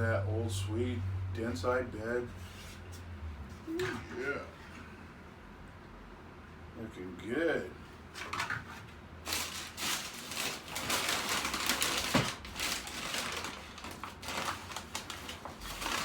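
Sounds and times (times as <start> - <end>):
packaging rustling and crinkling: 9.2 - 16.0.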